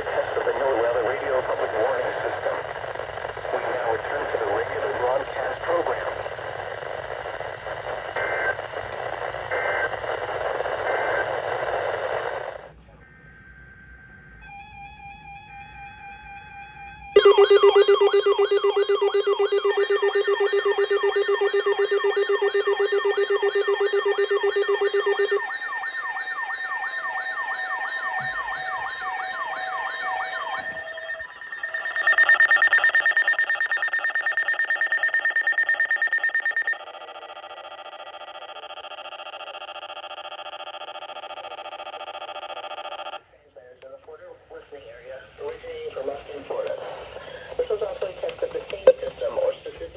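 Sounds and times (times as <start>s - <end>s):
steady chord of tones: 17.2s - 33.4s
short beeping tone: 17.2s - 36.8s
warbling alert tone: 17.2s - 36.9s
pulsing high tone: 17.2s - 38.4s.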